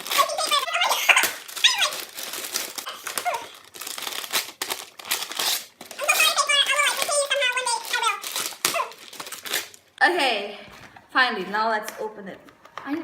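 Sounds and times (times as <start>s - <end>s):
gift bag crinkling: 0.0s - 9.9s.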